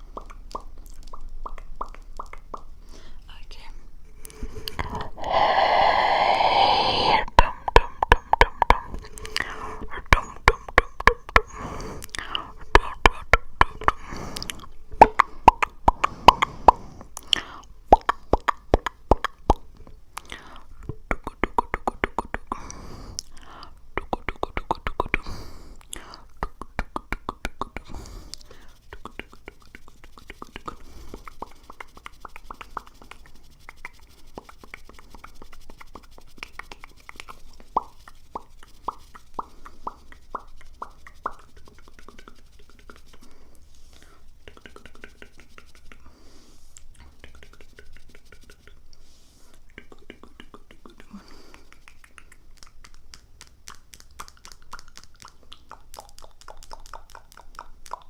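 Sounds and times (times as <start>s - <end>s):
wet mouth pops and clicks: 0.0s - 2.8s, 12.0s - 22.6s, 23.2s - 43.2s, 44.4s - 46.1s, 49.7s - 58.0s
faint breathy hiss: 2.8s - 10.5s, 11.3s - 17.9s, 22.4s - 23.9s, 25.0s - 26.4s, 27.8s - 54.0s.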